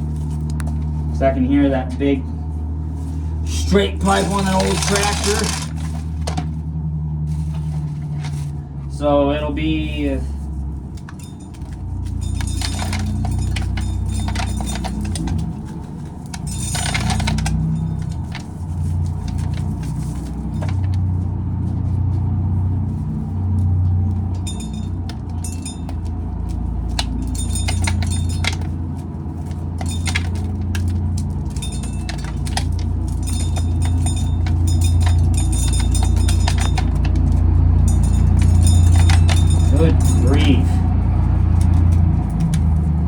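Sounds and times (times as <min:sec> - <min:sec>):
tractor engine rumbling: 0:00.0 - 0:43.0
dry clicks and clinks: 0:03.5 - 0:06.6, 0:10.3 - 0:21.2, 0:23.0 - 0:43.0.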